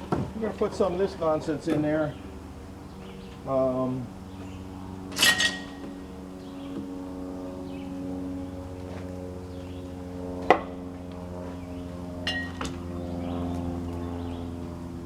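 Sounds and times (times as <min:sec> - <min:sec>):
low machine hum: 0:00.0 - 0:15.0
metal parts clanking: 0:05.1 - 0:05.8.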